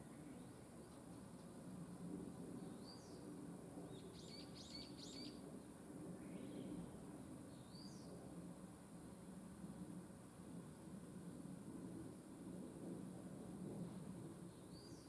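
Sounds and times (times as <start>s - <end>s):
small birds chirping: 3.9s - 5.4s, 14.5s - 15.0s.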